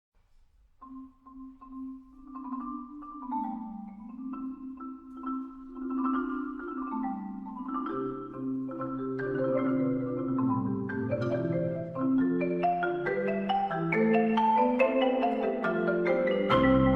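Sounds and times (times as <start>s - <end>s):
melody of struck pitched notes: 13.8s - 16.9s.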